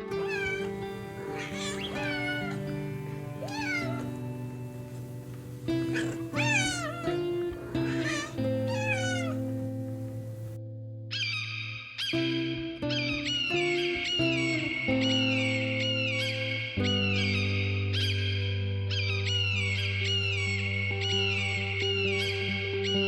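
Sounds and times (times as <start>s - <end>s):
cat meowing: 0.0s - 10.6s
background music: 0.0s - 23.0s.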